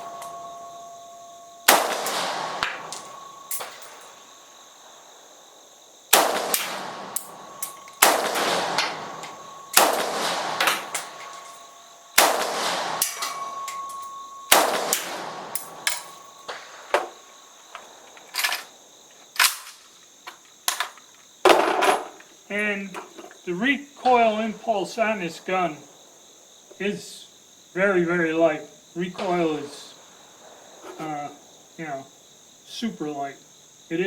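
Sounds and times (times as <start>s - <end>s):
faint sharp cracks: 0.0s - 5.1s, 6.1s - 22.3s
rifle shots with rolling echo: 0.0s - 5.3s, 6.1s - 17.3s.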